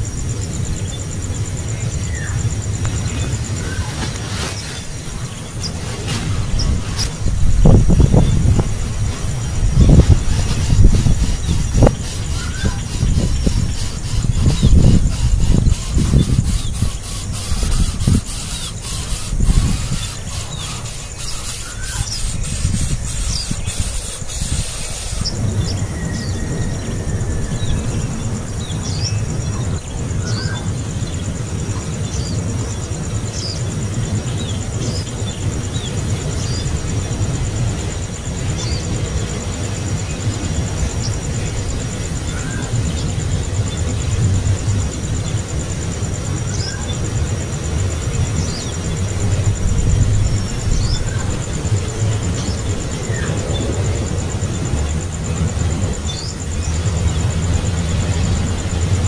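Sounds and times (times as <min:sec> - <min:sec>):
baby bird begging chirps: 0:10.0 - 0:25.4.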